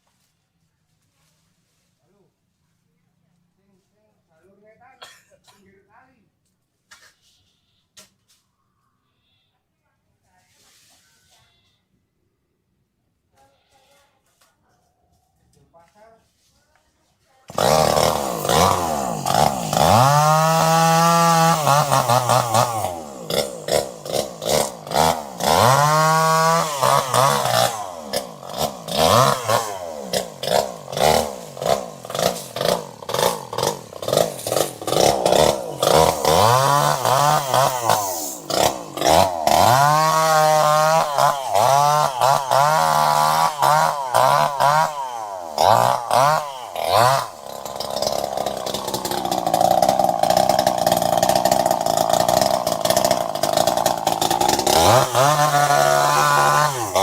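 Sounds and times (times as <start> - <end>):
chainsaw engine revving: 17.5 - 57.0.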